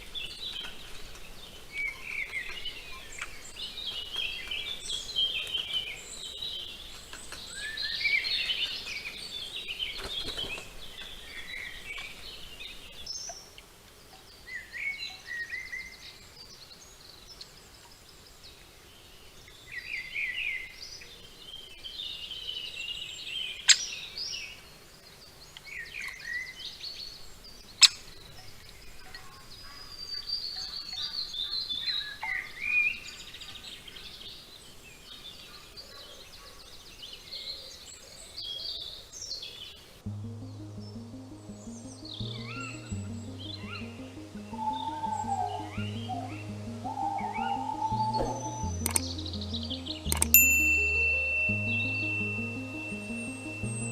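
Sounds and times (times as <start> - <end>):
birds chirping and trilling: 0.0 - 13.4, 40.8 - 50.7.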